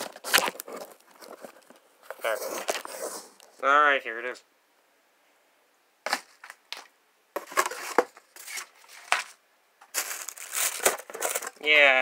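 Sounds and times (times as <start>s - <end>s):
packaging rustling and scraping: 0.0s - 3.6s, 6.1s - 11.8s
packaging clicks: 10.0s - 11.6s.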